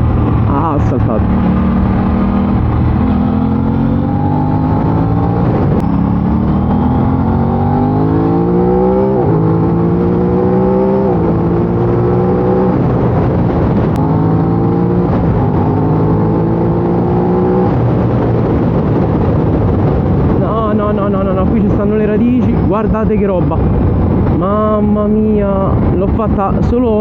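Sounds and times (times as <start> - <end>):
motorcycle engine revving: 0.0 - 20.4.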